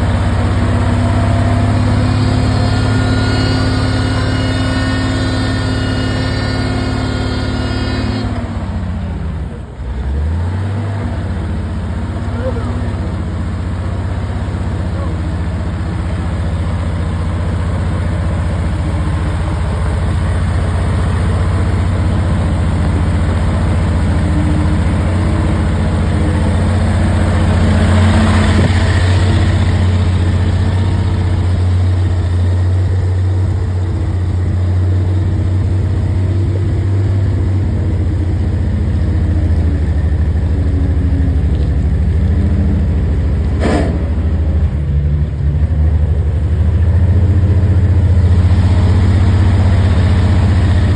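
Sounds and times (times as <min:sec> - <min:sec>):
heavy engine running: 0:00.0 - 0:50.9
sharp knock: 0:43.6 - 0:44.2.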